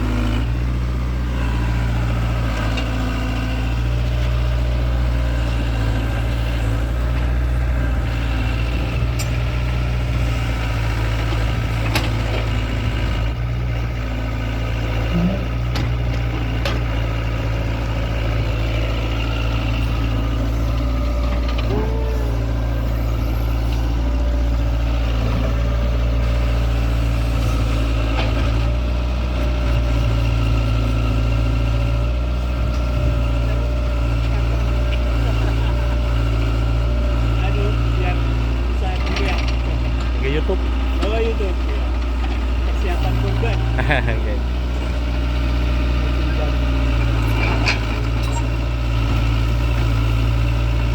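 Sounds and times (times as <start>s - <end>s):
excavator diesel engine running: 0.0s - 50.9s.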